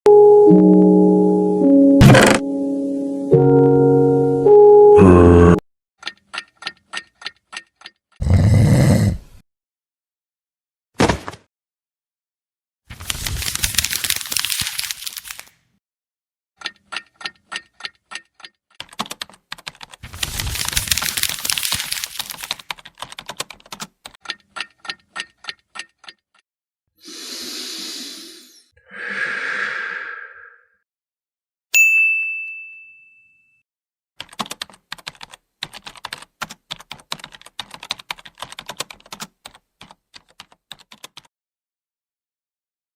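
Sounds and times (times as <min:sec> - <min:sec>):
keyboard typing: 0:16.6 - 0:26.2, 0:34.2 - 0:41.3
bell ding: 0:31.8 - 0:33.6.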